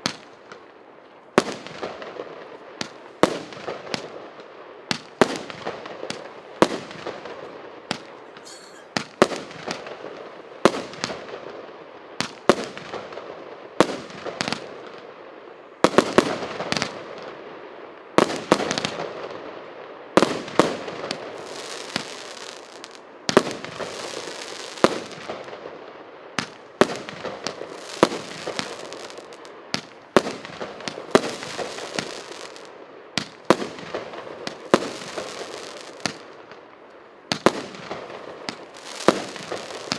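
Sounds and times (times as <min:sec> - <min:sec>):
firework bangs: 0:01.4 - 0:15.0, 0:20.2 - 0:25.7, 0:26.4 - 0:36.5, 0:37.3 - 0:39.9.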